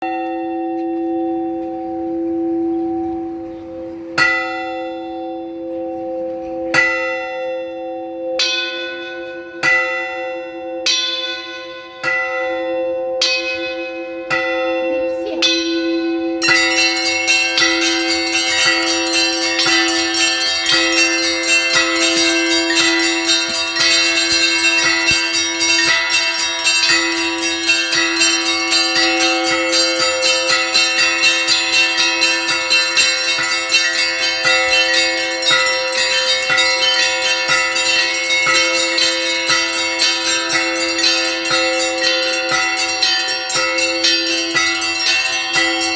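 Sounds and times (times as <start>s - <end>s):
large church bell strokes: 0.0s - 45.9s
small bells rapid peal: 13.4s - 45.9s.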